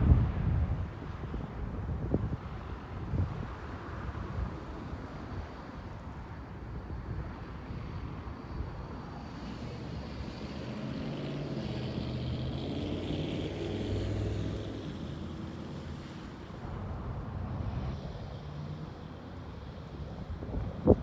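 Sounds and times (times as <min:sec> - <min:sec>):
vehicle passing by: 0:08.9 - 0:21.0.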